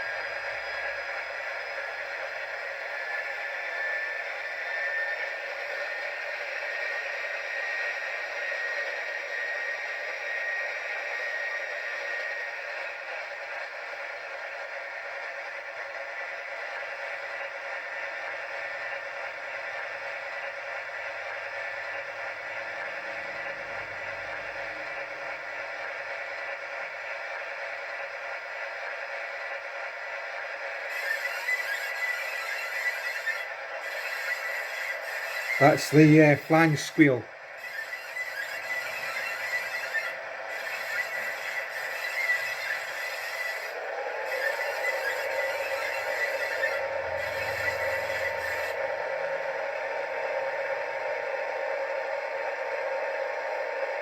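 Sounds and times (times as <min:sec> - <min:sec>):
diesel engine sound from small speaker: 0:00.0 - 0:54.0
steady hissing from small speaker: 0:30.3 - 0:54.0.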